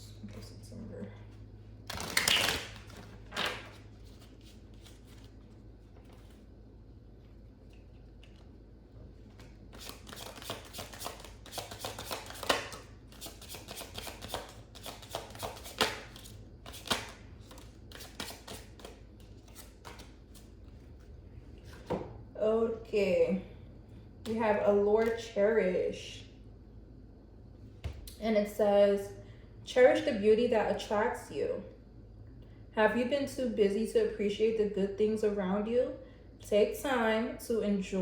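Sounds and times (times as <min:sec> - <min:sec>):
cards being shuffled: 0:01.9 - 0:06.4, 0:09.3 - 0:20.8.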